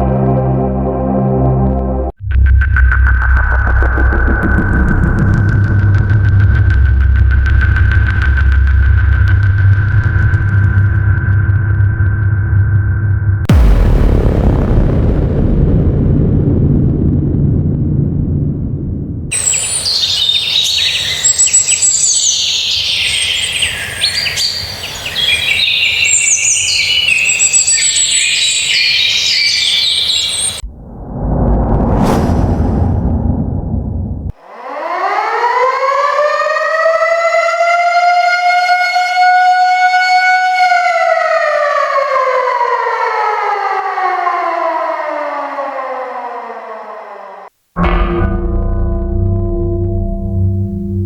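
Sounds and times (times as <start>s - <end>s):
songbirds chirping and trilling: 19.3s - 30.6s
siren wailing and winding down: 34.5s - 47.5s.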